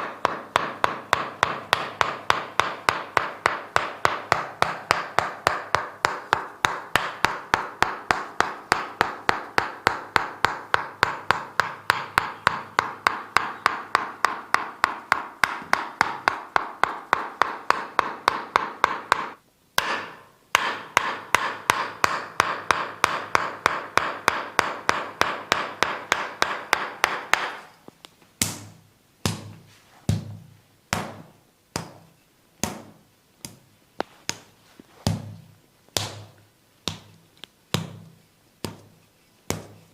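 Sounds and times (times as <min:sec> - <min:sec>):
percussive massage taps: 0:00.0 - 0:27.6, 0:28.4 - 0:39.8
soft rubbing: 0:29.5 - 0:30.1, 0:34.0 - 0:35.1.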